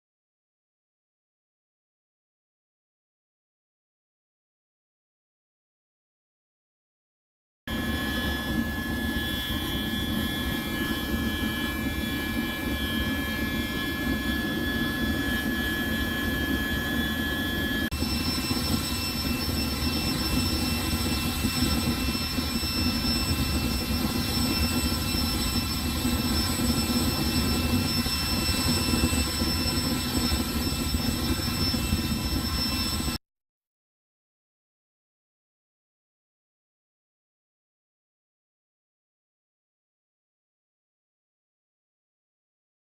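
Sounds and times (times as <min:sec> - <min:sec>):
burner roaring with high whine: 0:07.7 - 0:33.2.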